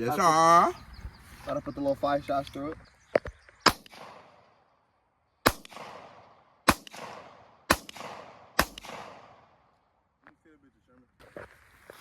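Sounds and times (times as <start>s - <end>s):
pistol shots with echo: 3.6s - 4.6s, 5.4s - 9.7s.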